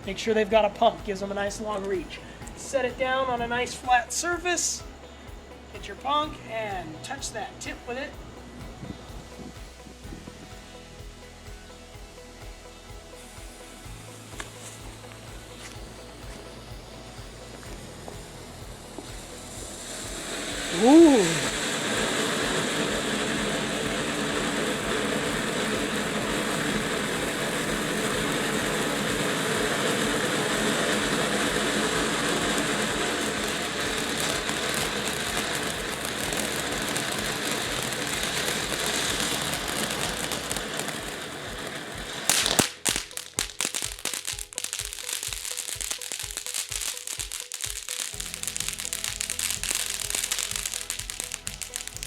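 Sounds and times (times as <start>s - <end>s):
fountain firework hissing: 0.0s - 52.0s
music with steady beat: 0.0s - 52.0s.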